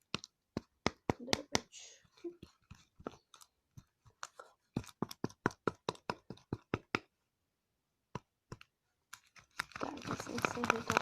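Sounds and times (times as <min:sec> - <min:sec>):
utensil tapping against bowl: 0:00.0 - 0:07.1.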